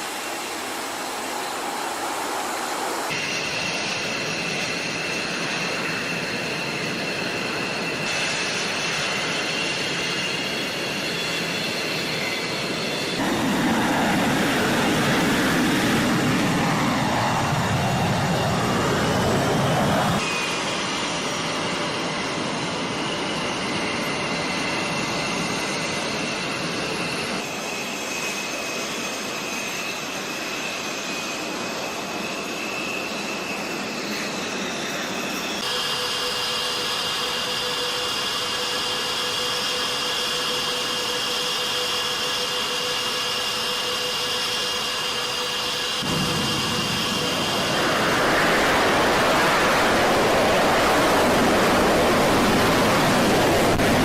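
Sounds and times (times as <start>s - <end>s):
fighter jet engines whining: 0.0s - 54.0s
louder rushing noise: 46.0s - 54.0s.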